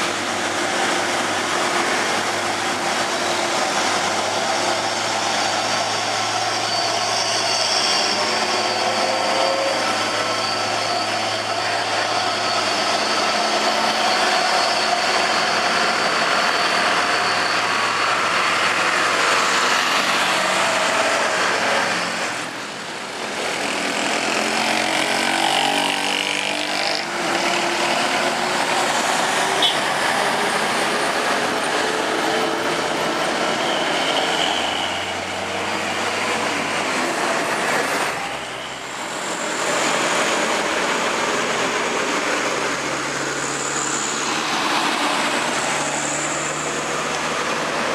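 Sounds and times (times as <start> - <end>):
diesel engines of heavy vehicles: 0.0 - 47.9
road noise: 0.0 - 47.9.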